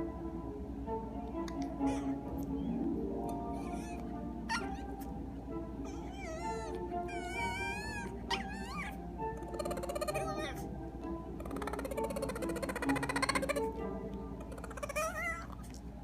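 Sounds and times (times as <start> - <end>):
background music: 0.0 - 16.0
dog whining and chirping: 1.8 - 2.7, 3.3 - 5.2, 5.8 - 10.7, 11.4 - 13.8, 14.4 - 15.7.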